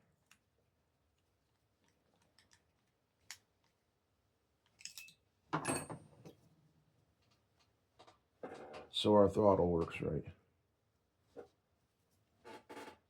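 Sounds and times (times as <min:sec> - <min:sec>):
clicks and rattles of handled parts: 0:01.8 - 0:03.8, 0:04.6 - 0:05.2.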